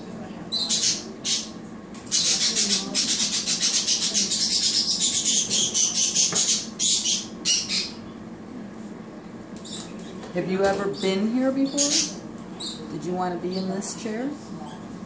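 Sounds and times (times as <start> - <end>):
parrot squawking harshly: 0.6 - 1.5, 2.1 - 8.0.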